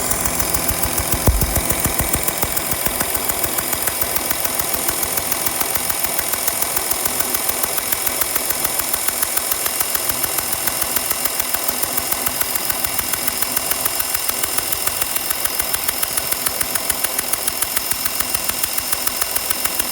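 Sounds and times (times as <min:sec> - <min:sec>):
diesel engine ticking: 0:00.0 - 0:19.9
low thump: 0:01.3 - 0:02.2.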